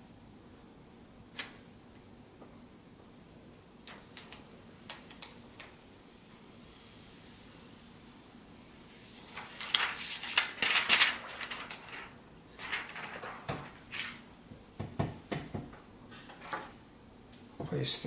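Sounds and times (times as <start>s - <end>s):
plastic film peeling crackle: 8.9s - 14.2s.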